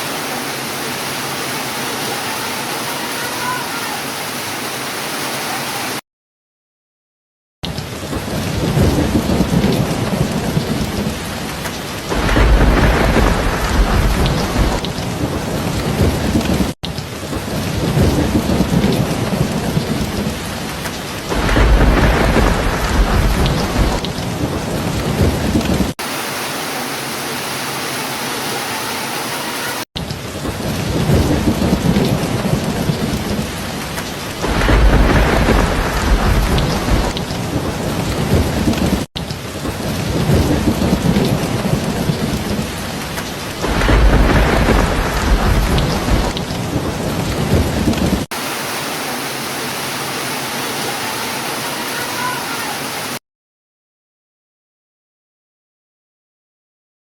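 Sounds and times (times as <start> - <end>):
heavy rain: 0.0 - 6.0, 7.6 - 53.2
thunder rumbling: 7.8 - 26.0, 30.0 - 48.4.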